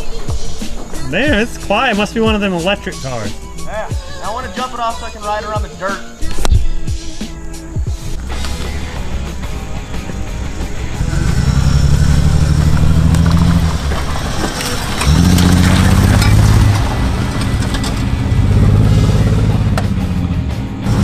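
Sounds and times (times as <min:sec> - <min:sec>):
car engine revving: 0:08.1 - 0:21.0
knocks and rattles: 0:12.5 - 0:18.8.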